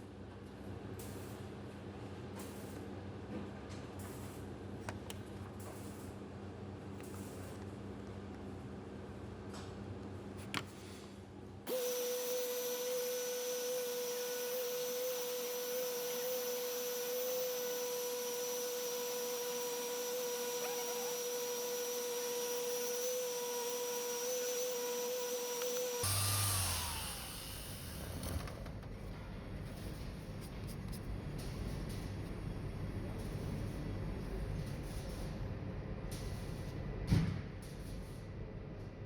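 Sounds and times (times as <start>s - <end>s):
power tool motor whine: 11.7s - 28.5s.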